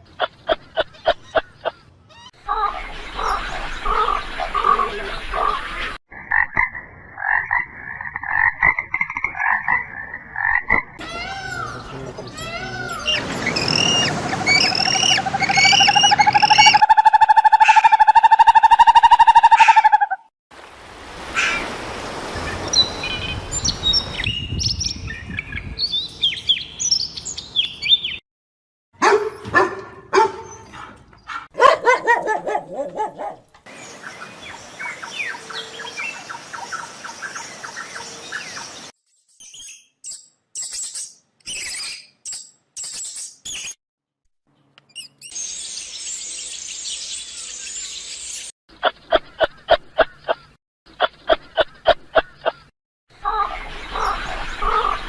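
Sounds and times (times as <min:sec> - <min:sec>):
high bird-like chirping: 0:11.0 - 0:16.8.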